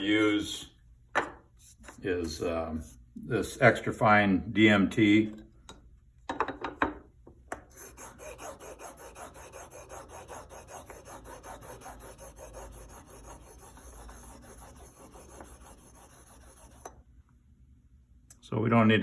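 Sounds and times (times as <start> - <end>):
blade rubbing on sharpening plate: 7.7 - 17.0.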